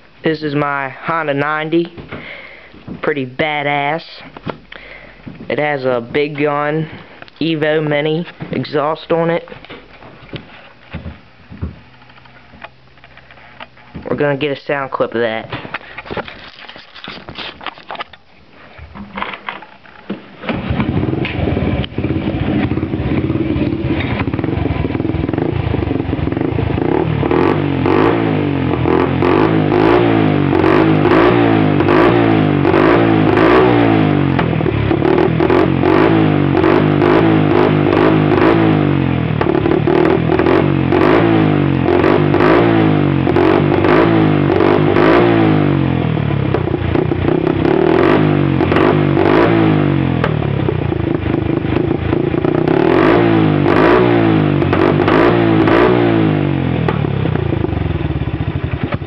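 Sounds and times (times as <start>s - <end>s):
small motorcycle engine revving: 20.4s - 59.0s.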